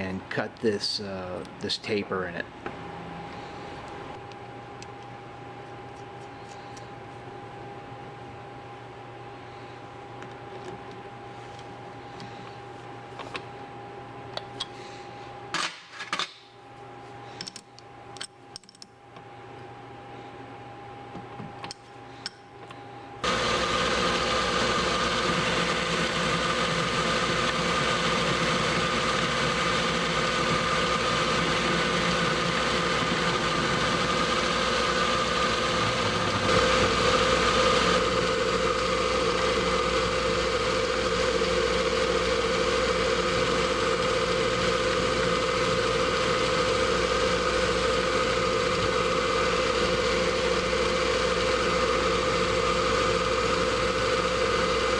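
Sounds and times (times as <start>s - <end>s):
metal lathe humming and whining: 23.2s - 54.9s.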